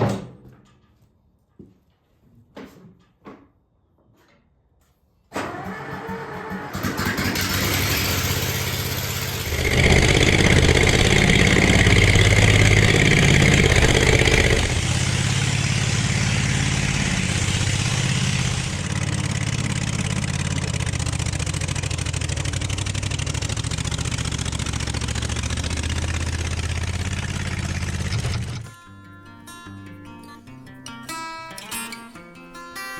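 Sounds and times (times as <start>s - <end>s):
tractor engine running: 5.4s - 28.7s
steady whine: 7.9s - 19.2s.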